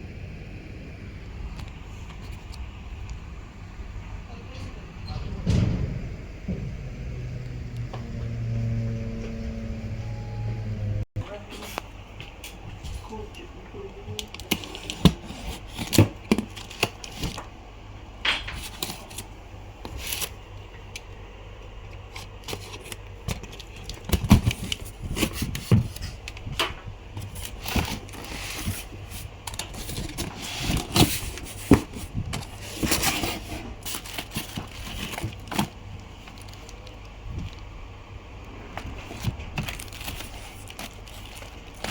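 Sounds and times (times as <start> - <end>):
packaging rustling: 14.2 - 17.5, 18.5 - 21.1, 21.7 - 37.9, 38.8 - 41.9
hands handling printer: 21.9 - 37.7, 38.8 - 41.9.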